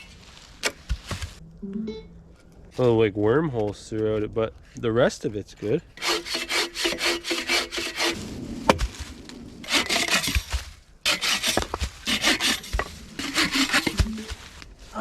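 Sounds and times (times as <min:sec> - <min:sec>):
hand saw cutting wood: 0:06.0 - 0:08.2, 0:09.6 - 0:14.3.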